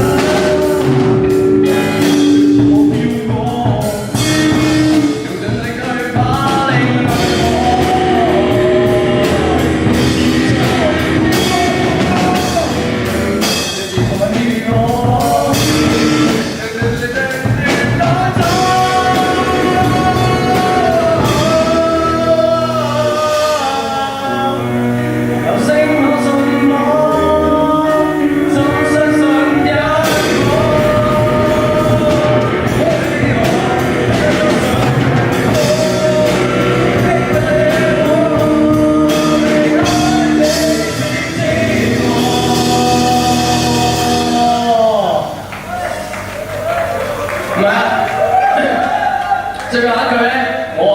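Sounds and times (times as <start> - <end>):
rock song with singing: 0.0 - 50.9.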